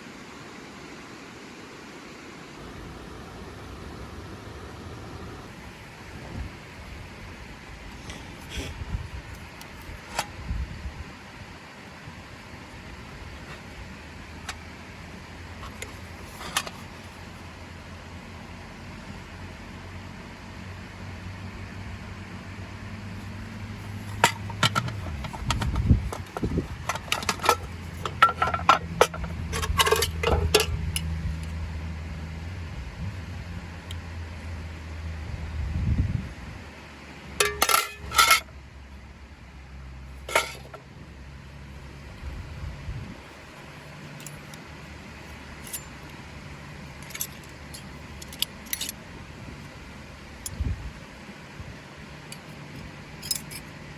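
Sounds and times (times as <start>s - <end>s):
steady background hiss: 0.0s - 35.6s
steady low hum: 2.4s - 53.9s
camp gear clinking and knocking: 15.5s - 17.2s, 23.2s - 31.6s, 37.4s - 38.5s, 40.2s - 40.9s, 45.4s - 46.2s, 46.9s - 49.1s, 52.3s - 53.8s.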